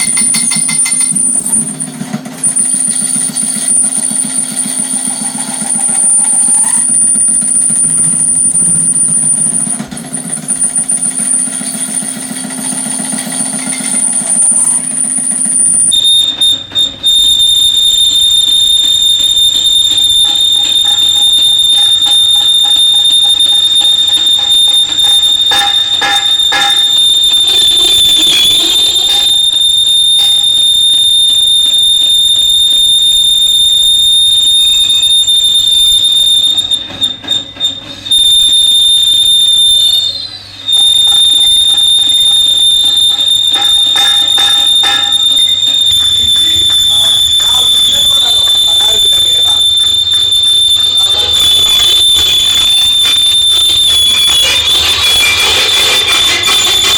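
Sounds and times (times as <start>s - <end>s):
workshop machine whining: 0.0s - 56.9s.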